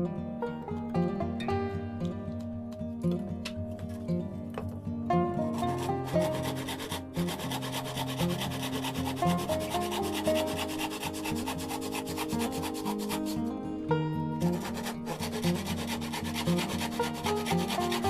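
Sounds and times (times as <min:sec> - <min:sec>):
background music: 0:00.0 - 0:18.0
wood being sanded: 0:05.4 - 0:13.5, 0:14.4 - 0:18.0.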